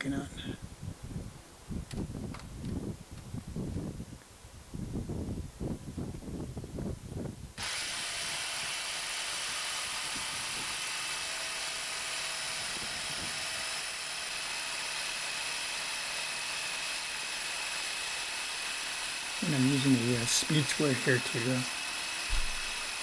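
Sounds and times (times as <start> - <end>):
jigsaw cutting wood: 7.6 - 23.0
low knocks: 22.3 - 22.7.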